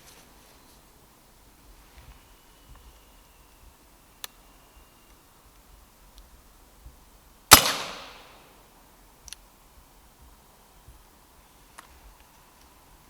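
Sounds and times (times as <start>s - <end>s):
air rifle shot: 7.5s - 8.5s.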